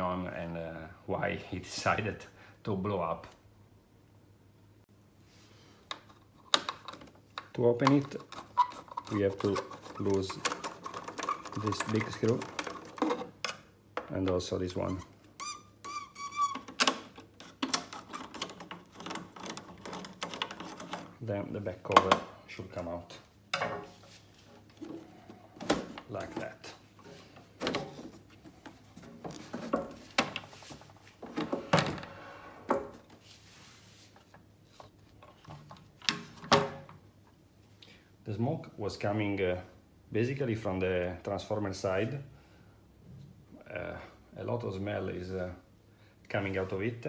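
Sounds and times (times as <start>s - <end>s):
light metallic clicks and rattles: 5.9s - 14.4s
screw squeaking in thread: 8.0s - 13.1s, 14.9s - 21.0s.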